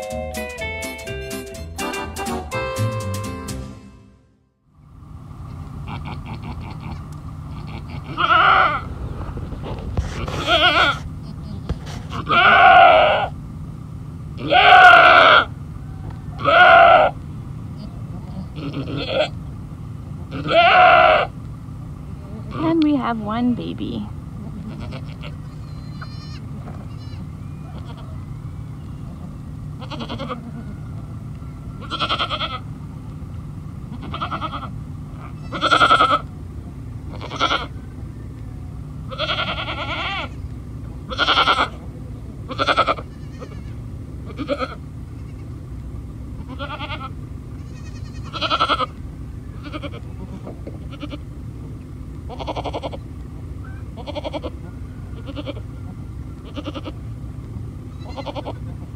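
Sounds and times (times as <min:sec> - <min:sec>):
steady low rumble: 0:03.7 - 0:58.9
goats bleating: 0:05.8 - 0:08.9, 0:09.7 - 0:13.4, 0:14.4 - 0:15.5, 0:16.4 - 0:19.5, 0:20.2 - 0:21.4, 0:24.3 - 0:28.2, 0:29.1 - 0:30.8, 0:31.8 - 0:32.8, 0:33.8 - 0:36.4, 0:37.0 - 0:37.8, 0:39.0 - 0:45.6, 0:46.4 - 0:51.4, 0:52.2 - 0:57.1, 0:57.8 - 0:58.9.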